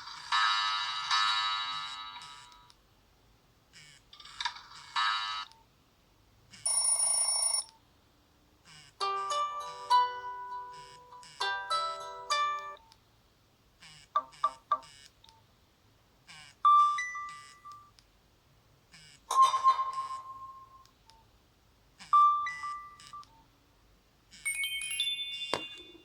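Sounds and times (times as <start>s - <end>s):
phone electronic tone jingles: 6.6s - 7.7s.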